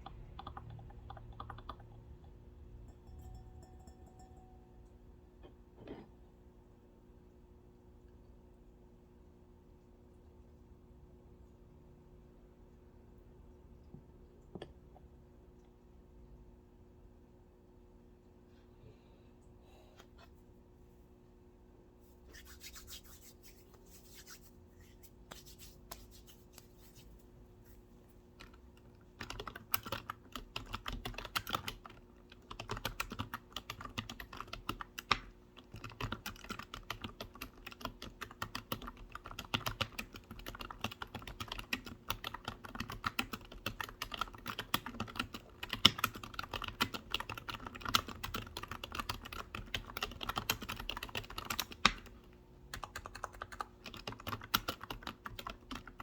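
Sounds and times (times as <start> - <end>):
computer keyboard typing: 0.0 - 2.4, 28.4 - 56.0.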